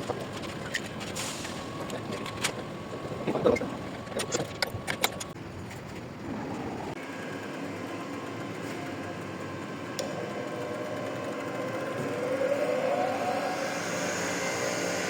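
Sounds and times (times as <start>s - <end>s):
metallic clicks and clatter: 3.3s - 6.1s.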